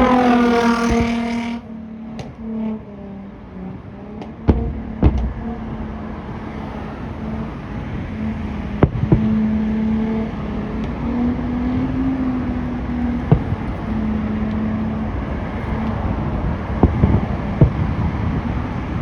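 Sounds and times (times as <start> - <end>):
distant fireworks bangs: 12.9 - 19.0.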